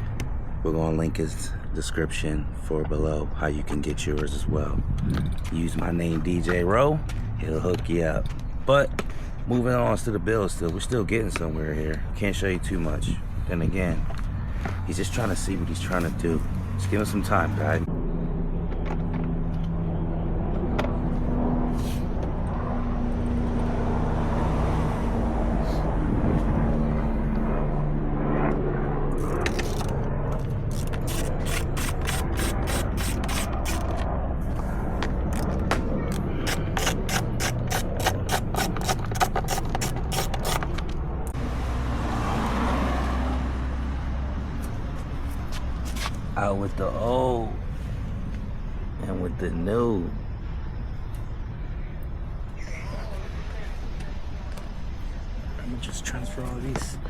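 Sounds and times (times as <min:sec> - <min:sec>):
low mechanical drone: 0:00.0 - 0:57.0
ratchet wrench clicking: 0:30.7 - 0:33.9, 0:36.2 - 0:40.7.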